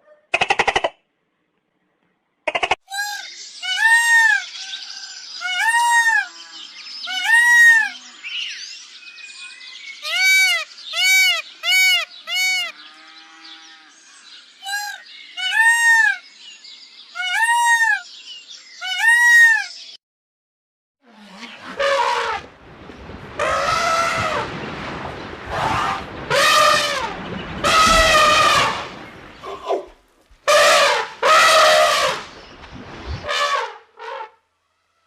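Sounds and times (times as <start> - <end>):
animal high arching cries: 17.2 - 18.0.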